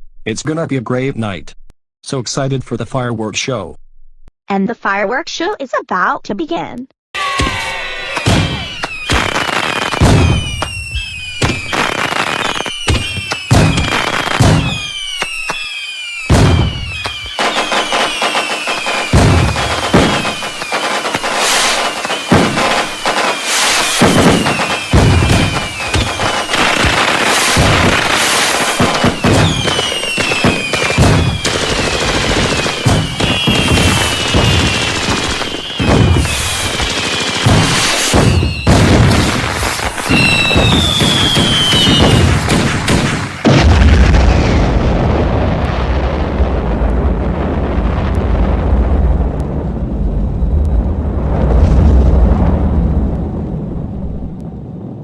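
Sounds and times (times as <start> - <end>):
fireworks whistling: 7.2 - 44.8
fireworks bursting: 7.2 - 54.5.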